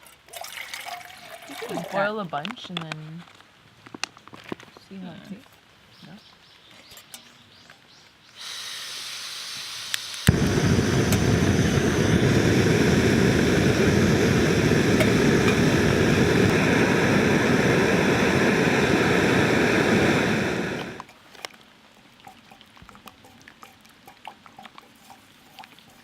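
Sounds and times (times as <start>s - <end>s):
gas hissing: 8.4s - 21.1s
burner flame rushing: 9.9s - 21.1s
stove lighting pop: 9.9s - 21.1s.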